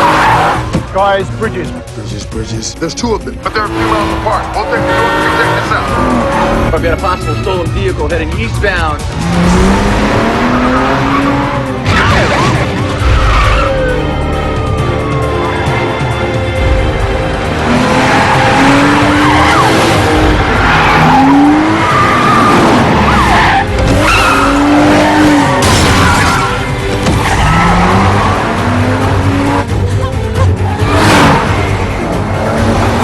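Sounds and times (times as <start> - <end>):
dramatic film score: 0.0 - 33.0
car engine running hard: 3.1 - 14.3, 15.8 - 33.0
tyre squeals: 20.4 - 25.2.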